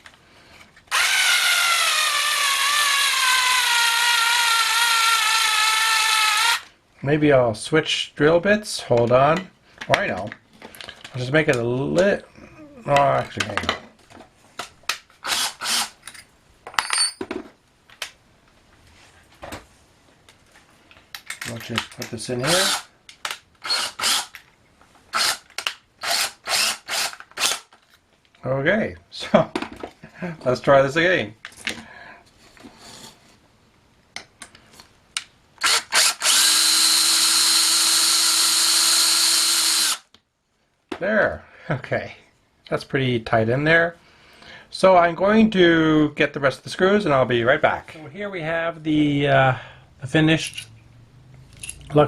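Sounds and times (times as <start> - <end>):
electric drill driving a screw: 0.9 - 6.7, 15.2 - 16.0, 22.4 - 22.9, 23.6 - 24.3, 25.1 - 27.7, 35.6 - 40.1
metal tools scraping rattle: 50.3 - 50.8, 51.5 - 52.0.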